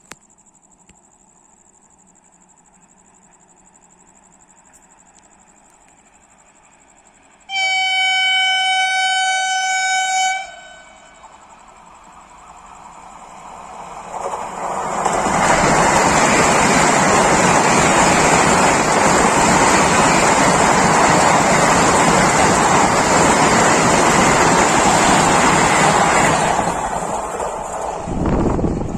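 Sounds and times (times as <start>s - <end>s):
train rushing past: 6.2s - 28.9s.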